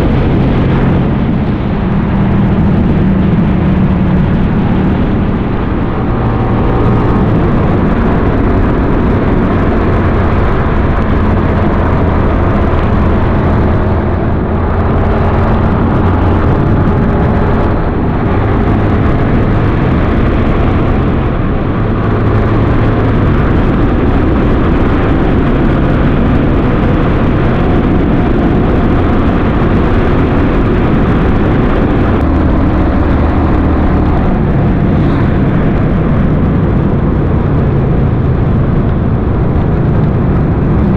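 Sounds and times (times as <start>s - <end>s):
motorcycle engine running: 0.0s - 40.9s
wind and road noise: 0.0s - 40.9s.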